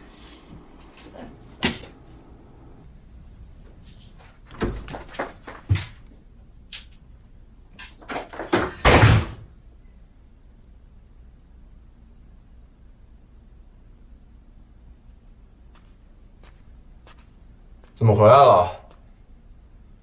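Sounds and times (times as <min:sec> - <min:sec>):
door shutting: 0:00.6 - 0:02.8, 0:04.0 - 0:06.1.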